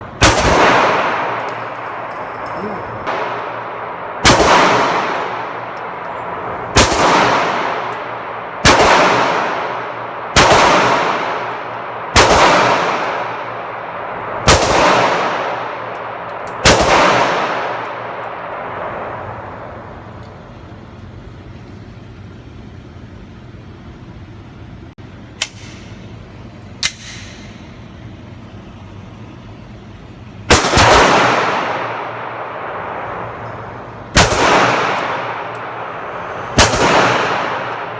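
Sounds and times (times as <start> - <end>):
gunshots with echoing tail: 0.2 - 6.0, 6.7 - 19.1, 30.5 - 33.4, 34.1 - 37.9.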